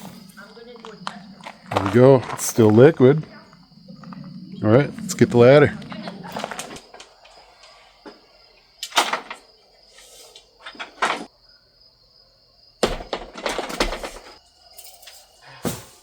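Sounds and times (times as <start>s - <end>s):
ladder rattling clatter: 10.6s - 11.3s, 12.8s - 14.4s
ladder knocks and scrapes: 12.8s - 14.4s.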